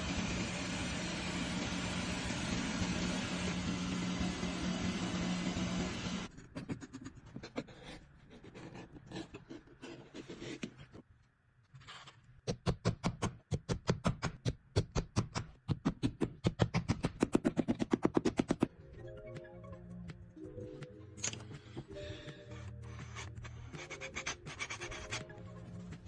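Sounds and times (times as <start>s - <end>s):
motor running: 0.0s - 6.3s.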